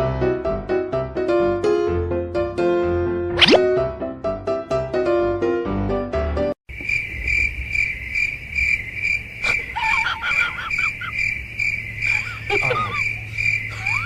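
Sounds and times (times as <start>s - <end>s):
wavering warbling calls: 3.4s - 3.6s
crickets chirping: 6.7s - 14.0s.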